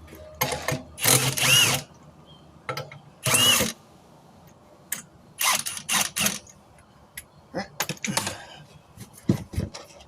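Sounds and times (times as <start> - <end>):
power tool motor winding: 1.0 - 1.9, 3.2 - 3.8, 5.4 - 6.5.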